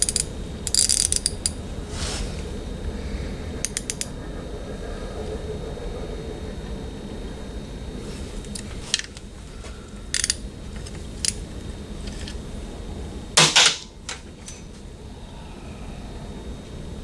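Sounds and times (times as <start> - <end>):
metal tools clinking and clicking: 10.1 - 12.4, 13.4 - 14.8.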